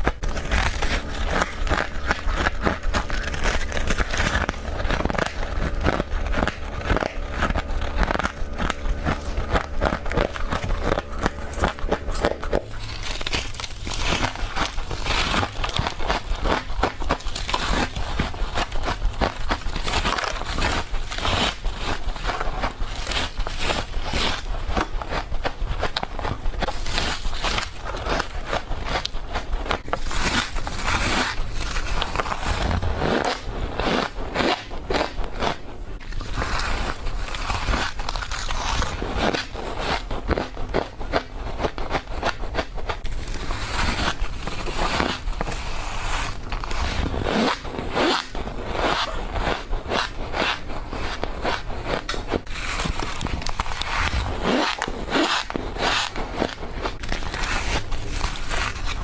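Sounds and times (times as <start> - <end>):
ice being crunched: 0.0 - 24.9, 29.8 - 40.5, 52.4 - 59.0.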